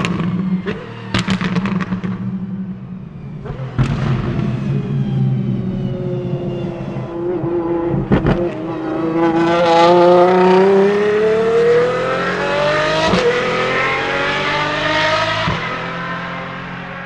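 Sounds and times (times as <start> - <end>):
car engine accelerating hard: 0.0 - 17.0
sharp exhaust cracks: 1.2 - 9.5.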